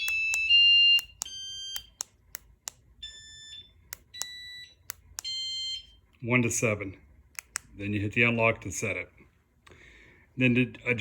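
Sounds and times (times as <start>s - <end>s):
sharp clicks: 0.0s - 2.9s, 3.9s - 5.3s, 7.3s - 7.8s.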